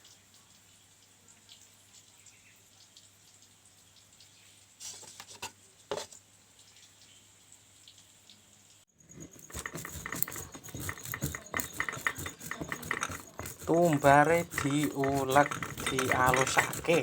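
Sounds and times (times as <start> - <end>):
stone mortar and pestle grinding: 9.0 - 17.0.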